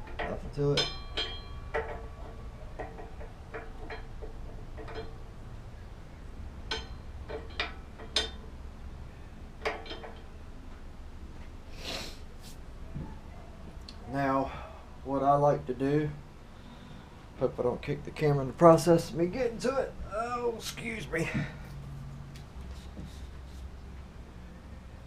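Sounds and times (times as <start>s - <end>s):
short scraping rub: 22.6s - 23.7s.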